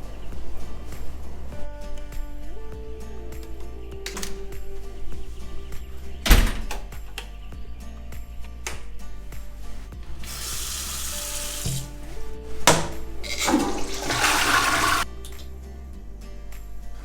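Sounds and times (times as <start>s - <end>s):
quiet background music: 0.0s - 17.0s
water running: 10.2s - 15.5s.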